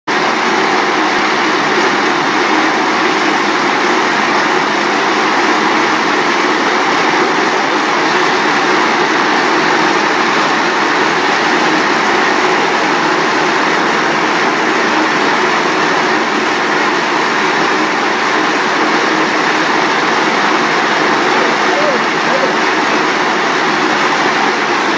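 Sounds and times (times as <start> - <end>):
baler machine running: 0.2 - 24.9.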